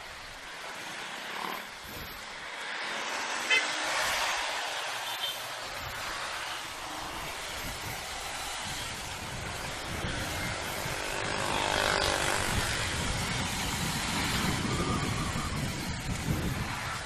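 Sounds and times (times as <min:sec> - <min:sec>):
traffic noise: 0:00.0 - 0:17.0
wind noise: 0:05.6 - 0:17.0.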